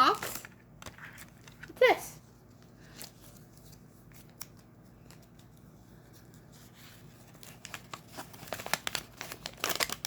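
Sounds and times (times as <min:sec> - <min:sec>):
low steady hum: 0:00.0 - 0:10.0
paper leaflet rustling and clicking: 0:02.8 - 0:10.0.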